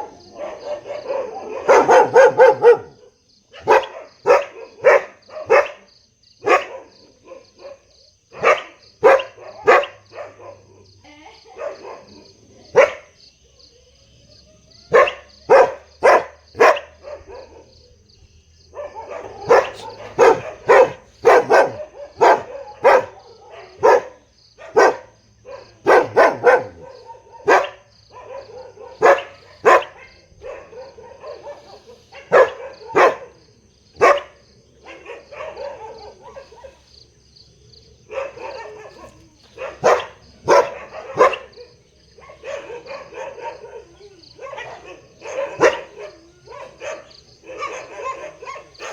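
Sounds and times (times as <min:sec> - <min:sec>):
big dog barking: 0:00.0 - 0:13.2, 0:14.9 - 0:18.0, 0:18.7 - 0:37.2, 0:37.9 - 0:48.9.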